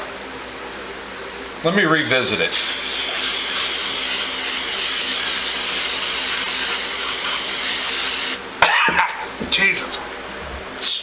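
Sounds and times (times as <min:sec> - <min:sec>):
aerosol can spraying hiss: 0:02.6 - 0:08.4.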